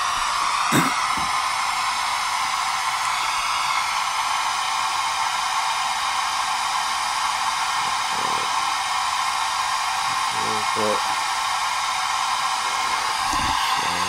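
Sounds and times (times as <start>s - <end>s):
pink noise hiss: 12.6s - 14.0s.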